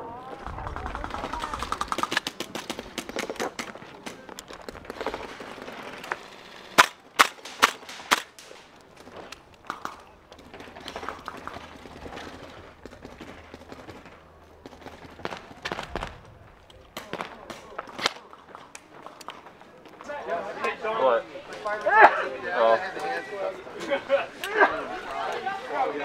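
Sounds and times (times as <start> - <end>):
airsoft guns firing: 6.7 - 8.7.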